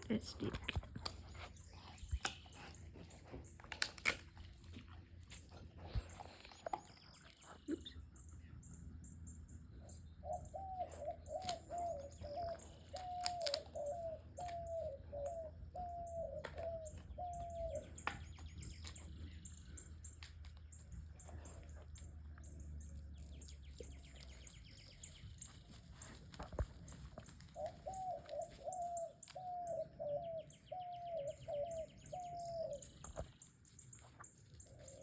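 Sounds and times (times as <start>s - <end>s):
animal calling: 9.9s - 18.2s, 27.2s - 33.2s.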